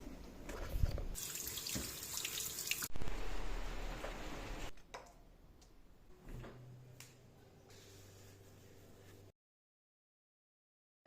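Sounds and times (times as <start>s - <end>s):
tap water running into sink: 1.2s - 2.9s.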